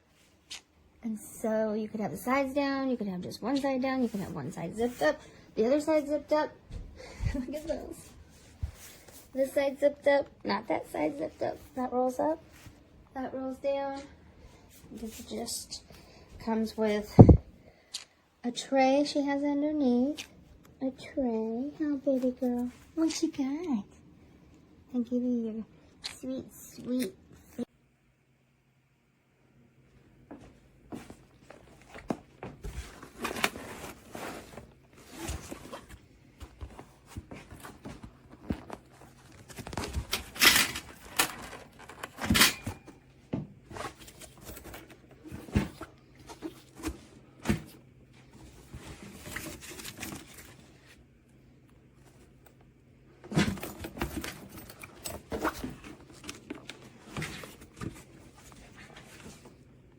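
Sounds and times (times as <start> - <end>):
rustling handling noises: 2.2 - 17.2, 30.0 - 59.9.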